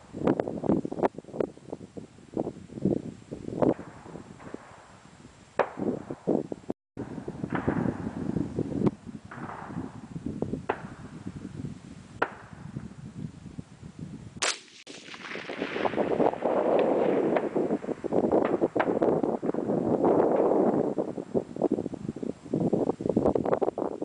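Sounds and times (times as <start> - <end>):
wind on microphone: 0.0 - 24.0
rifle shot crack: 14.4 - 19.0.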